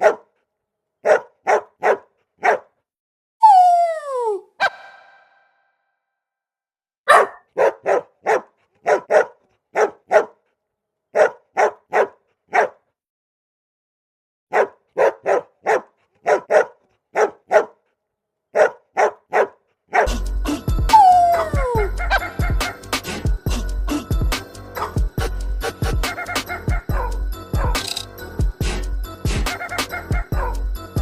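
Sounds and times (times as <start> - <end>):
dog barking: 0.0 - 2.9, 7.1 - 13.0, 14.5 - 20.1, 21.1 - 22.8, 24.8 - 25.0, 26.0 - 28.0, 29.5 - 30.6.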